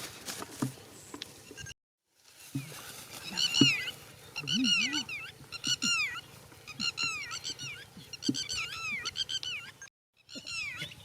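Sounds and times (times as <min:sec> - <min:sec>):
high-pitched animal calls: 0:03.2 - 0:11.0.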